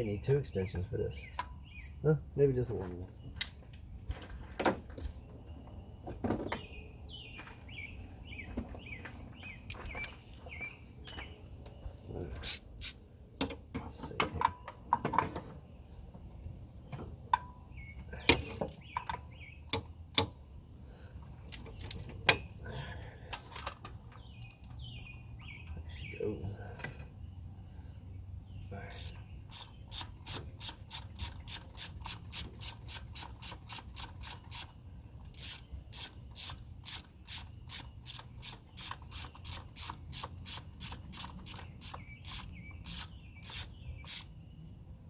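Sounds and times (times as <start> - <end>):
birds chirping: 0.0 - 13.1, 14.1 - 45.0
metal tools clinking: 18.3 - 19.2.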